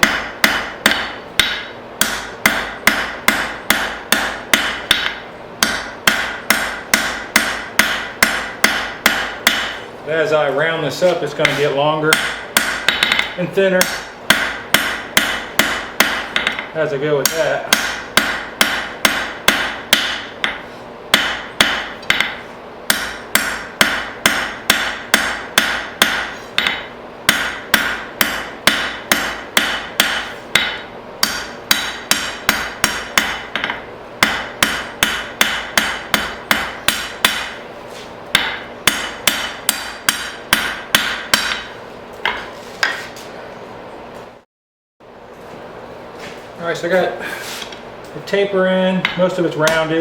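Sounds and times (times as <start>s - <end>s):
hammer ringing on anvil: 0.0s - 9.8s, 12.1s - 37.6s, 38.3s - 41.7s.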